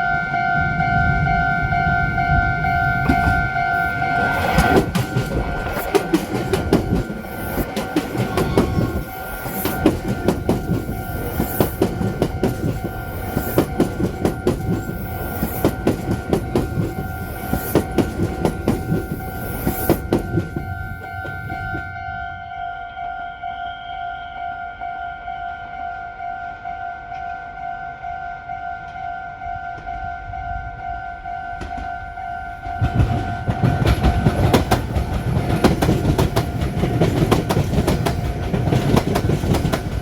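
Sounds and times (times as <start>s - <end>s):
crossing warning alarm ringing: 0.0s - 40.0s
train wheels clattering over rail joints: 2.7s - 21.9s, 31.4s - 40.0s.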